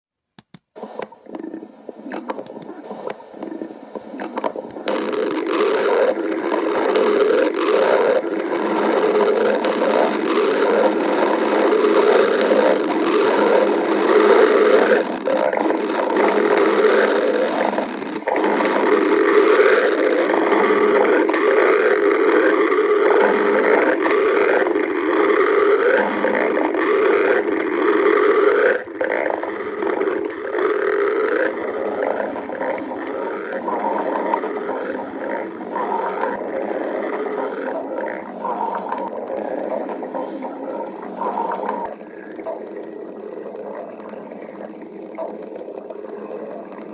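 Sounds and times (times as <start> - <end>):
loud stomach growling: 0.8 - 46.9.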